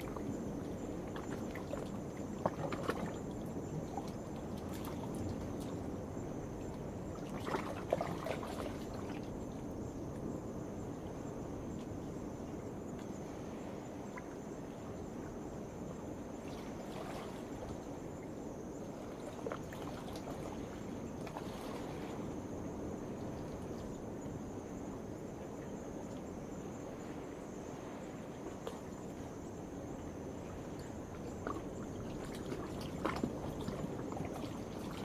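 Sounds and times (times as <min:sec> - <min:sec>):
night insects droning: 0:00.0 - 0:35.0.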